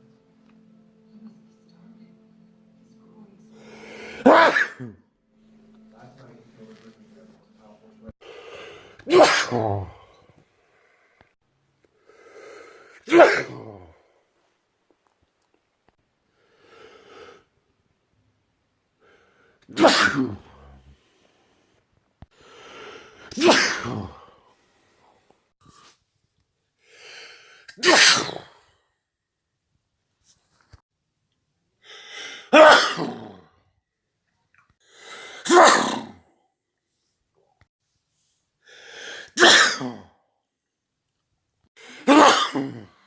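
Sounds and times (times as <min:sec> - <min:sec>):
person sneezing loudly: 0:04.0 - 0:05.0, 0:08.8 - 0:10.0, 0:12.9 - 0:14.0, 0:19.6 - 0:20.8, 0:23.2 - 0:24.4, 0:27.7 - 0:28.6, 0:32.3 - 0:33.5, 0:35.1 - 0:36.2, 0:39.1 - 0:40.1, 0:41.8 - 0:43.0
gasping in-breath: 0:38.6 - 0:39.4.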